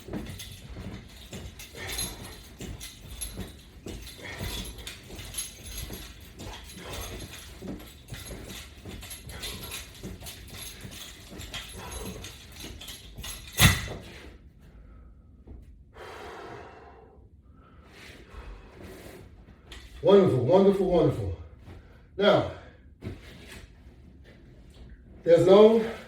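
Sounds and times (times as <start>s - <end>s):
person breathing quickly: 14.0s - 19.3s.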